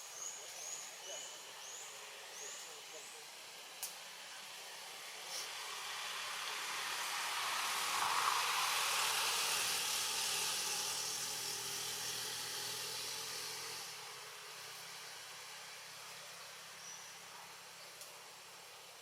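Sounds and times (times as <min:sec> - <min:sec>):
vehicle passing: 0:04.5 - 0:16.8.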